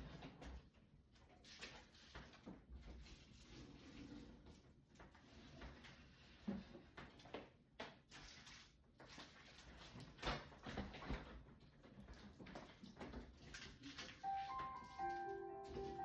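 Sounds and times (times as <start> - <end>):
knocks and clatters in refrigerator: 10.0 - 14.2.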